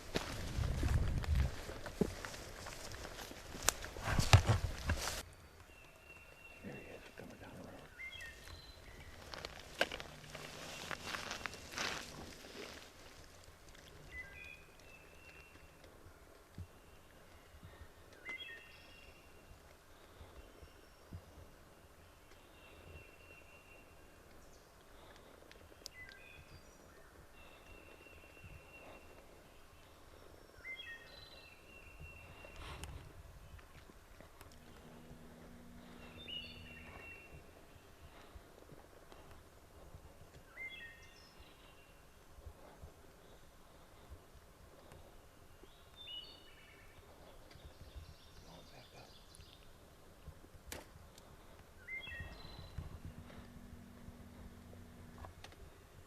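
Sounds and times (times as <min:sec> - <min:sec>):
songbirds singing: 0:00.0 - 0:50.2, 0:51.1 - 0:56.0
outdoor background noise: 0:00.0 - 0:56.0
faint bird chirps: 0:05.3 - 0:12.2, 0:13.9 - 0:24.8, 0:25.7 - 0:32.8, 0:34.5 - 0:38.3.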